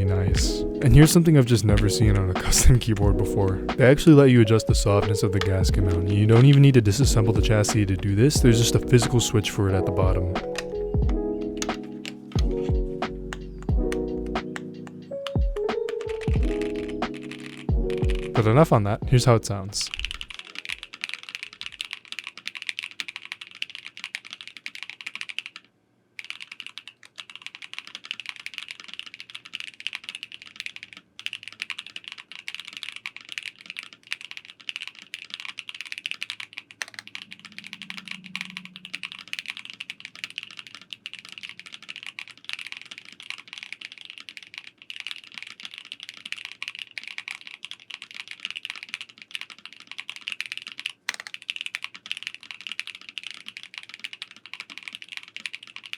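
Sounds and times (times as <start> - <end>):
mechanical keyboard typing: 0.0 - 55.9.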